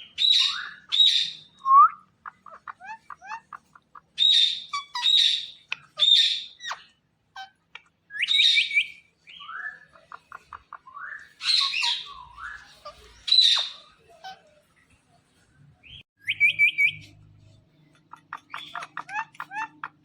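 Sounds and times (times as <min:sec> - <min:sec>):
parrot screeching and chirping: 0:00.1 - 0:01.6, 0:02.2 - 0:14.5, 0:18.0 - 0:20.0.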